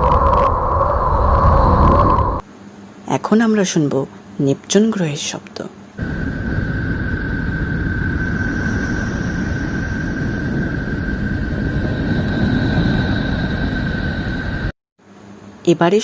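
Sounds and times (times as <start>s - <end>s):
low rumbling drone: 0.0s - 2.4s, 6.0s - 14.8s.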